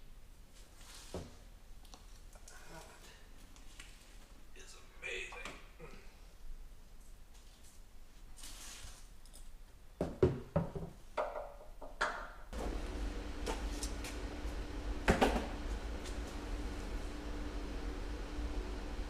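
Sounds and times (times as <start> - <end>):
low hum: 12.6 - 19.0.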